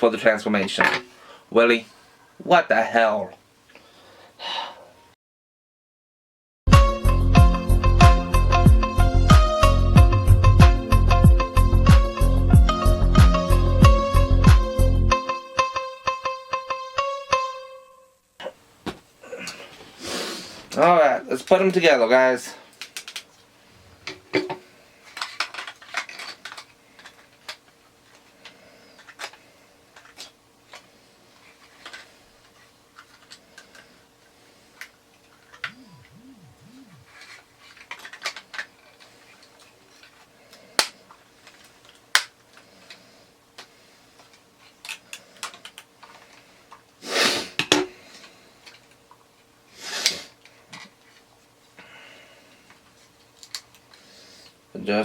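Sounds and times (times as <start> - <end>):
toy parts clicking and snapping: 25.2 - 27.7, 37.8 - 38.9, 43.6 - 46.3, 53.4 - 53.9.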